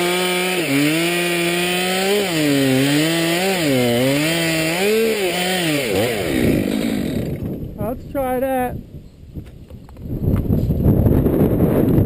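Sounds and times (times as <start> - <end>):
chainsaw cutting through wood: 0.0 - 7.8.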